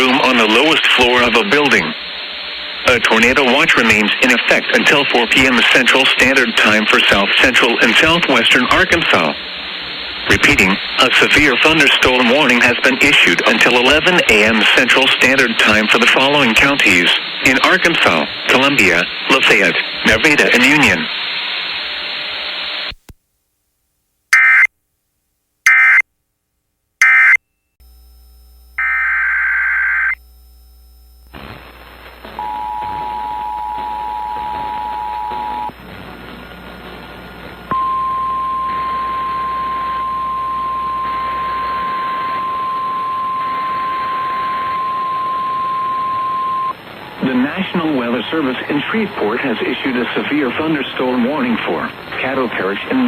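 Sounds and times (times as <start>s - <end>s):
radio hiss: 0.0s - 23.1s, 30.9s - 53.0s
steady warning alarm tone: 27.0s - 27.4s, 28.8s - 30.2s, 32.4s - 35.7s, 37.7s - 46.8s
digital data bursts screeching: 28.8s - 30.2s
two-tone attention signal: 32.4s - 35.7s, 37.7s - 46.7s.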